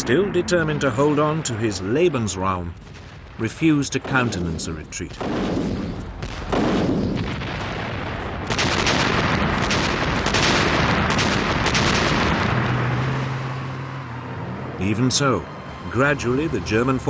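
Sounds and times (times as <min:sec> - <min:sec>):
continuous gunfire: 0:02.8 - 0:13.6.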